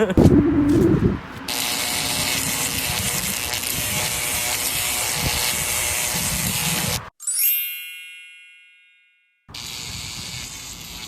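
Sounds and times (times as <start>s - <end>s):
electric buzzing hiss: 9.5s - 11.0s.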